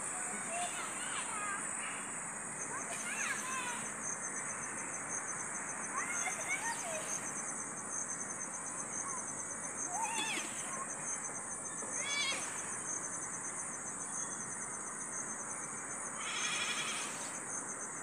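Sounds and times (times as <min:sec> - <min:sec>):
crickets chirping: 0:00.0 - 0:18.0
short wavering animal calls: 0:16.2 - 0:17.4.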